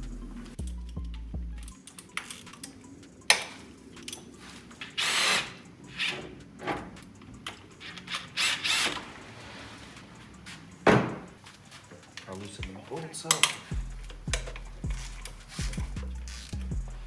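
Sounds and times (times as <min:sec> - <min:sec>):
power tool bursts: 0:04.9 - 0:05.6.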